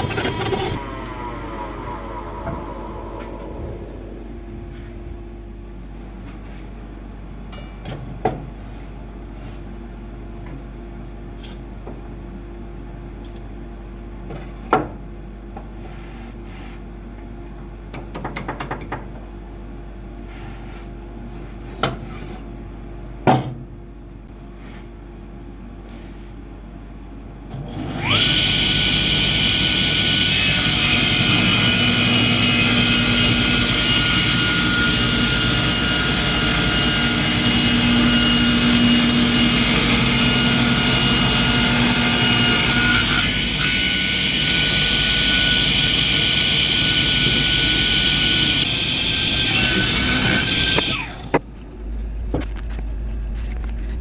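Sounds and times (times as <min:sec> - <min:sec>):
power tool motor whining: 0:00.0 - 0:02.0, 0:28.0 - 0:51.4.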